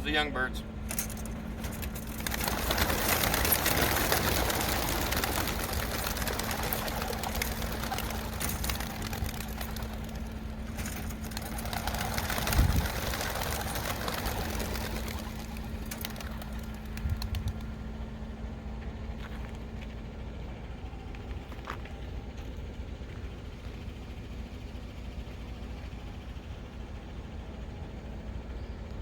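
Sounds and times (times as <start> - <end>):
low hum: 0.6 - 29.0
pigeon wings clattering: 0.9 - 17.8.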